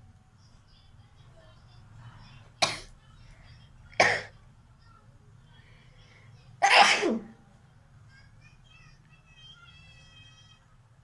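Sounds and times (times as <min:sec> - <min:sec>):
person sneezing: 0:06.6 - 0:07.3.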